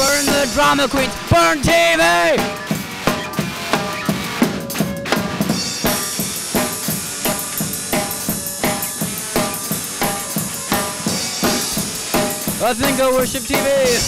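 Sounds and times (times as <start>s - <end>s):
drum-kit beat: 0.0s - 14.0s
cymbal or hi-hat wash: 5.5s - 14.0s.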